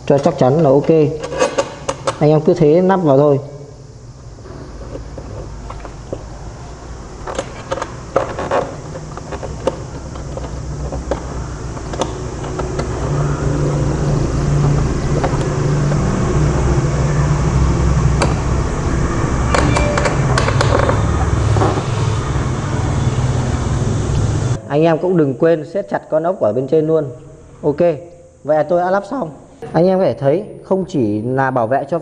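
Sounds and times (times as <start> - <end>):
steady low rumble: 7.9 - 24.6.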